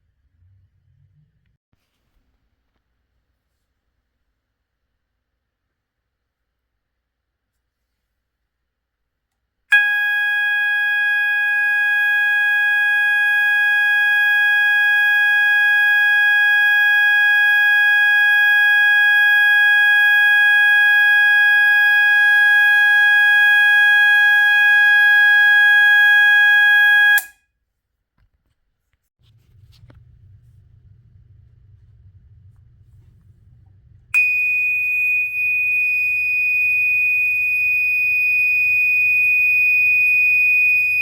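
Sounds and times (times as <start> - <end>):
fire alarm steady tone: 9.7 - 27.4, 34.2 - 41.0.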